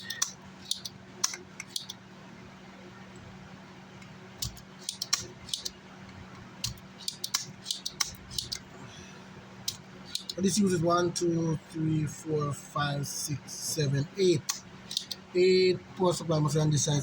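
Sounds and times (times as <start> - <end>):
metallic clicks of hand tools: 4.4 - 5.7, 6.7 - 8.6, 10.1 - 10.4, 14.5 - 15.2.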